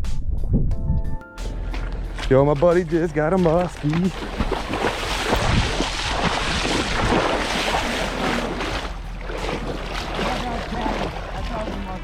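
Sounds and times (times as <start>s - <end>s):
wind rushing: 0.0s - 1.2s, 4.1s - 8.9s
water rushing: 1.8s - 12.0s.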